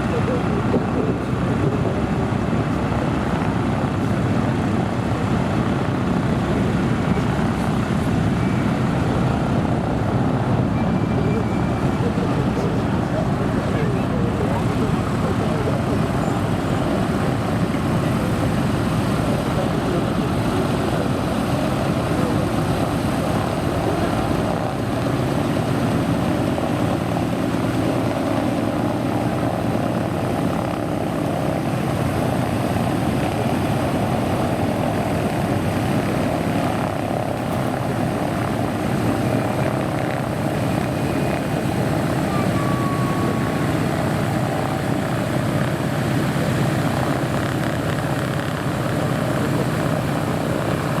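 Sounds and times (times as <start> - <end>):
propeller aircraft engine running: 0.0 - 51.0.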